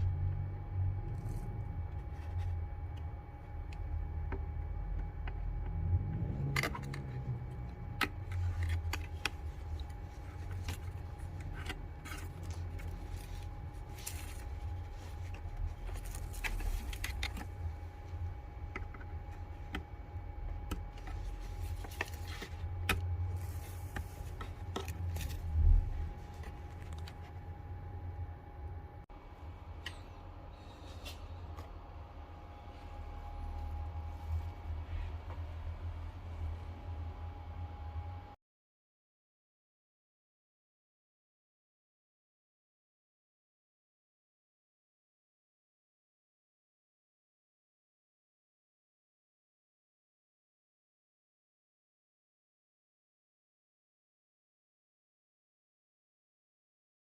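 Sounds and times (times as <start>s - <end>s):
low rumble: 0.0s - 38.3s.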